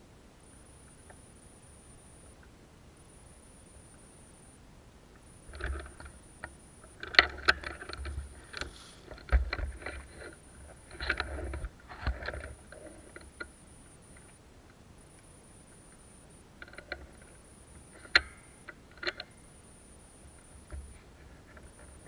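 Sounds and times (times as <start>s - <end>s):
rustling and crunching undergrowth: 7.3s - 13.2s
sharp clicks: 18.0s - 19.3s.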